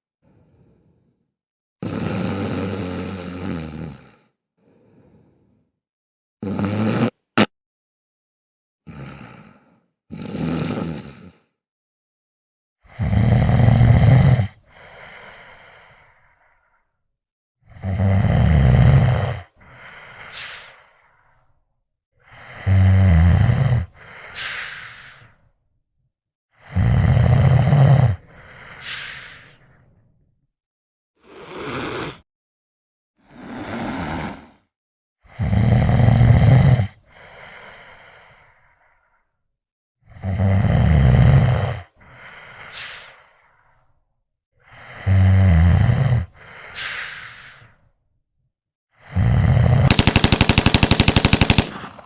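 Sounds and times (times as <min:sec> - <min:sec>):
loud snoring: 0:01.8 - 0:04.9, 0:06.4 - 0:07.5, 0:08.9 - 0:11.6, 0:12.8 - 0:14.6, 0:17.7 - 0:19.6, 0:22.4 - 0:24.5, 0:26.6 - 0:29.0, 0:31.2 - 0:32.2, 0:33.2 - 0:34.7, 0:35.3 - 0:37.0, 0:40.1 - 0:42.0, 0:45.0 - 0:47.2, 0:49.0 - 0:52.0
out-breath ending in high whistle: 0:46.7 - 0:47.6.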